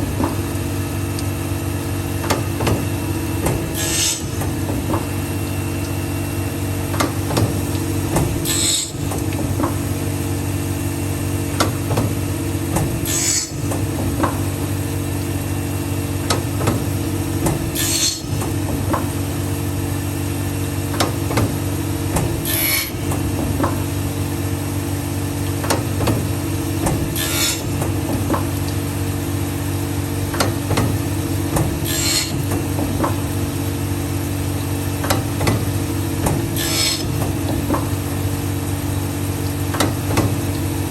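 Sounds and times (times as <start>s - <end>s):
high scraping of blade grinding: 31.9s - 32.3s.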